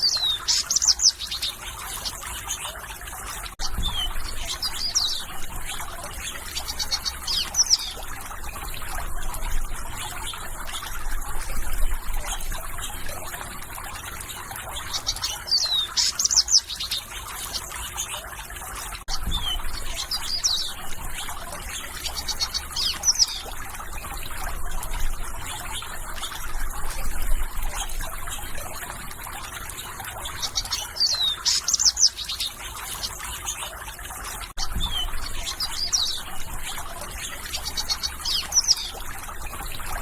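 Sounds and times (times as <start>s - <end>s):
running water trickling: 0.0s - 40.0s
songbirds chirping: 0.0s - 40.0s.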